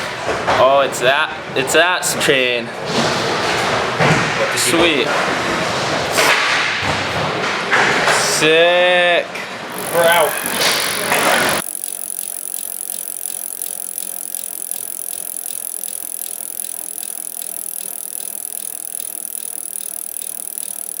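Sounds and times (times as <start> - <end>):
bike freewheel ticking: 9.7 - 21.0.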